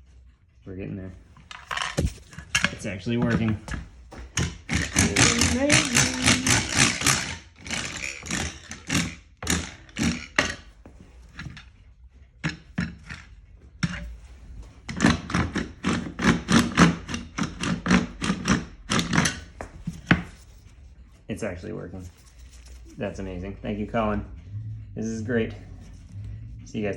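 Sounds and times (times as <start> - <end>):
wooden clacks and scrapes: 1.2 - 20.8.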